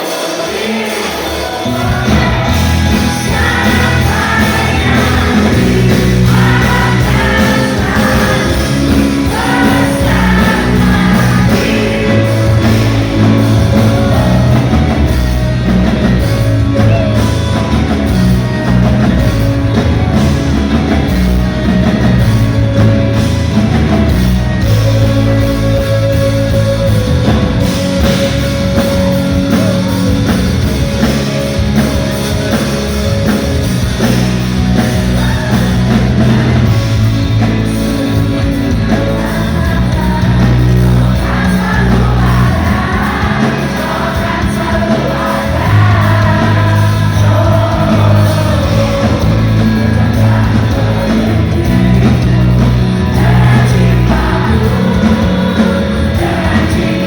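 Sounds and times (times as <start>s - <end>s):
person singing: 0.0s - 15.8s, 34.8s - 57.0s
live pop-rock band: 0.0s - 57.0s.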